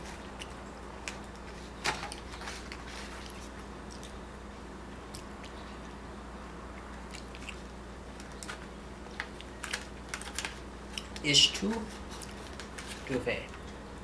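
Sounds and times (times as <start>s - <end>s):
person chewing food: 0.0s - 4.3s, 6.7s - 11.2s
low steady hum: 0.0s - 14.0s.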